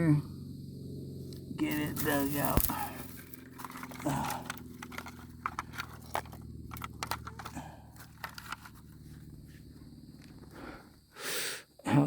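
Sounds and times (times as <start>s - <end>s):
low steady hum: 0.0s - 11.1s
footsteps through dry brush: 1.7s - 6.1s.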